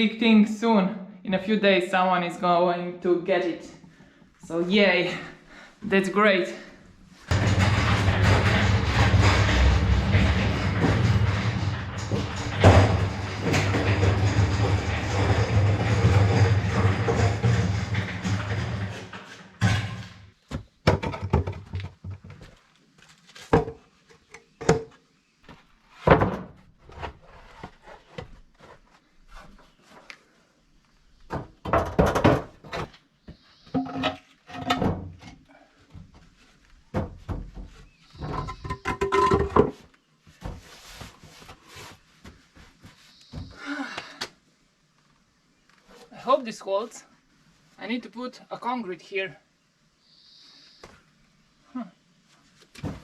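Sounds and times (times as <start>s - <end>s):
construction thuds and knocks: 7.3s - 22.5s, 31.3s - 32.9s, 36.9s - 39.8s, 52.8s - 53.0s.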